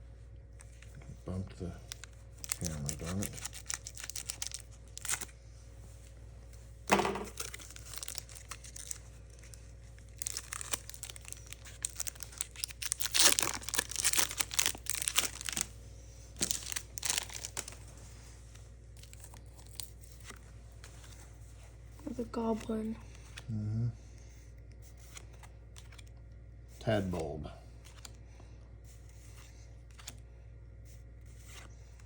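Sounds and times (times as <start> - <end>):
foil wrapper crinkling and tearing: 1.8 - 5.3, 7.3 - 15.8, 16.4 - 17.9, 19.0 - 20.4.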